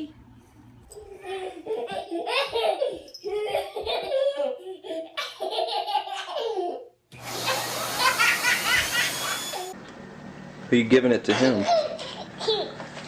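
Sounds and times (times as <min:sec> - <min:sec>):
young child laughing: 0:01.2 - 0:09.8, 0:11.3 - 0:12.8
high-pitched squeals or giggles: 0:06.2 - 0:09.8.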